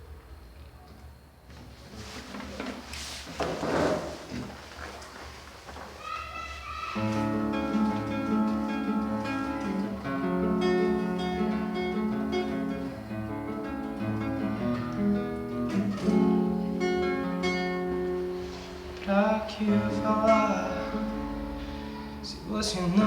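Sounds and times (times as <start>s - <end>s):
acoustic guitar playing: 7.0s - 23.0s.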